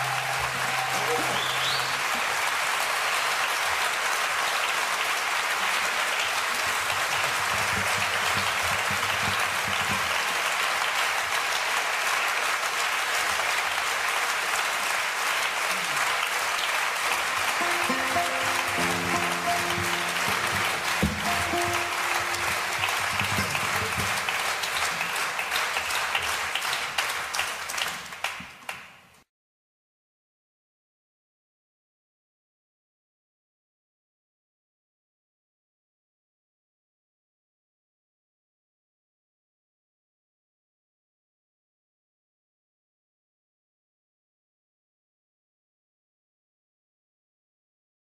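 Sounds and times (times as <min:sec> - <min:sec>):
audience applauding: 0:00.0 - 0:28.9
faint instrument notes: 0:17.5 - 0:25.1.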